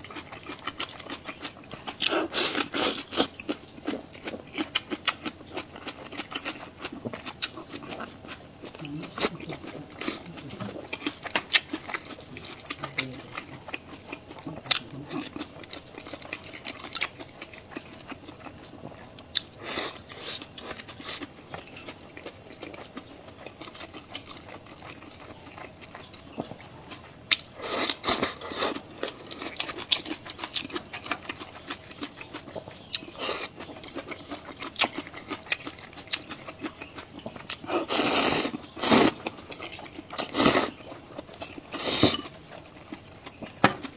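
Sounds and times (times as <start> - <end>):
chewing: 0.0 - 43.9
slurping noodles: 2.0 - 3.3, 37.6 - 39.2, 40.2 - 40.8.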